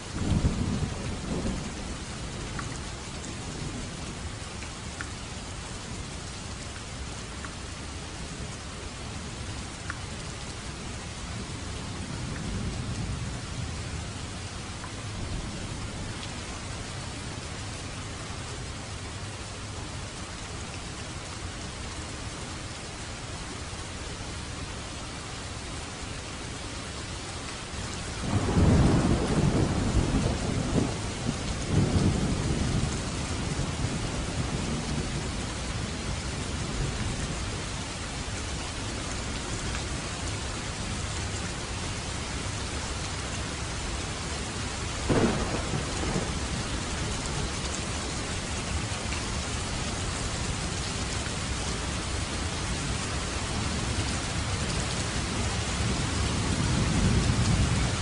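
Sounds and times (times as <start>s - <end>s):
heavy rain hissing: 0.0s - 58.0s
long roll of thunder: 28.2s - 35.4s, 45.1s - 47.8s, 55.5s - 58.0s
sharp thunderclap: 45.1s - 46.5s.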